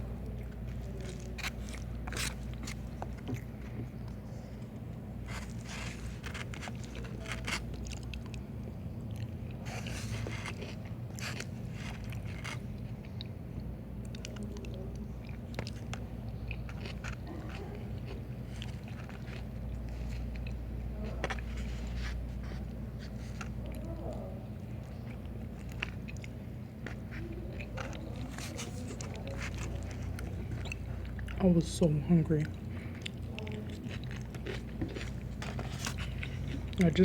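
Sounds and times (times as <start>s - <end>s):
steady low hum: 0.0s - 37.0s
chewing and biting: 0.1s - 31.6s, 32.4s - 37.0s.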